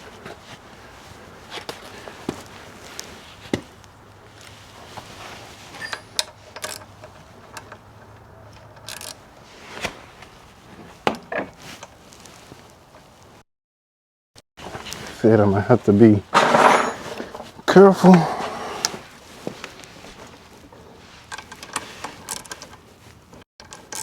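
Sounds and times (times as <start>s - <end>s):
hand tools clicking and knocking: 5.7s - 9.2s, 16.3s - 17.4s.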